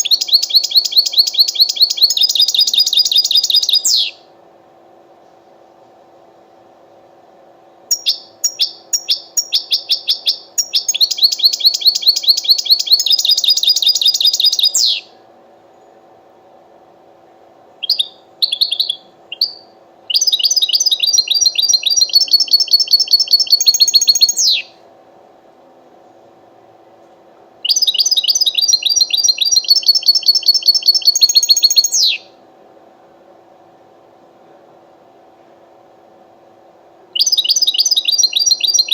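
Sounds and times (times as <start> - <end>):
goldfinch singing: 0.0 - 4.2, 7.9 - 15.1, 17.8 - 24.7, 27.7 - 32.2
faint steady hum: 0.0 - 38.9.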